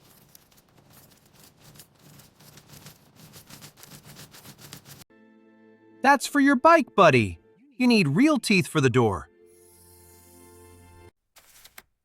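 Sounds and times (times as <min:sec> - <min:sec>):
metal keys rattling: 0:00.0 - 0:04.7.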